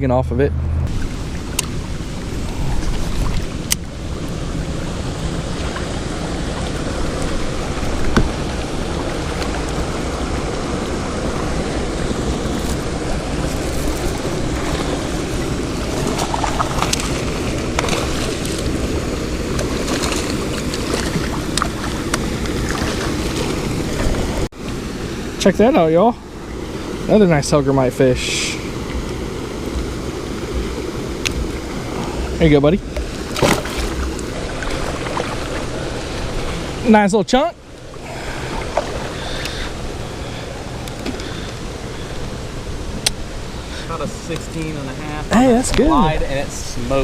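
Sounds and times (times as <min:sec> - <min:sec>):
wind buffeting microphone: 0:00.0 - 0:25.4
water moving around kayak: 0:00.9 - 0:47.0.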